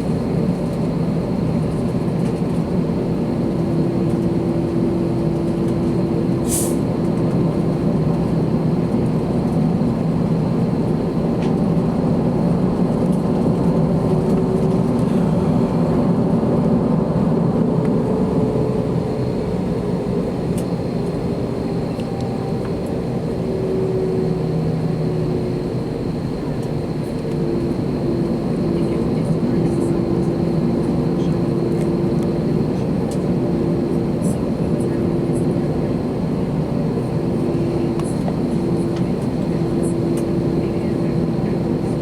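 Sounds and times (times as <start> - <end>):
jet engine cabin rumble: 0.0 - 42.0.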